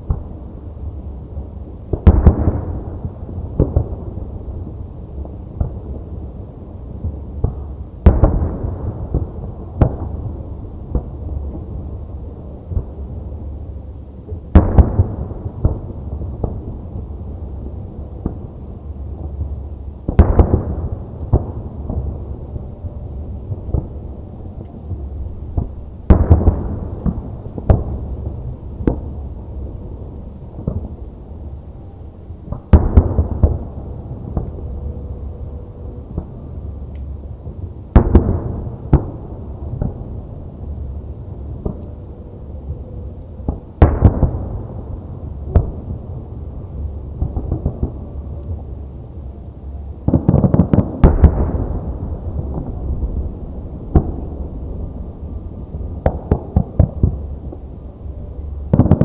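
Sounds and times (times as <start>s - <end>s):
firework booms with echo: 1.9s - 4.1s, 7.0s - 11.8s, 14.5s - 17.1s, 20.1s - 31.1s, 32.5s - 34.7s, 38.0s - 40.2s, 43.5s - 46.1s, 50.0s - 57.6s, 58.7s - 59.0s
sharp firework pops: 50.1s - 51.8s, 53.9s - 54.4s, 56.0s - 57.6s.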